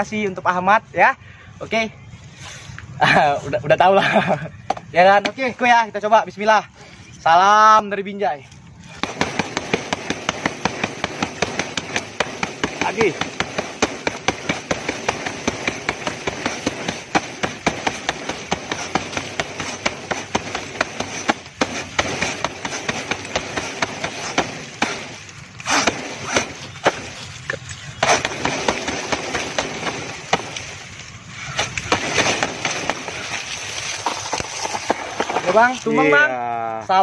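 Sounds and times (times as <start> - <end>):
blade chopping into tree trunk: 9.0 - 27.2, 28.0 - 30.8, 31.5 - 35.8.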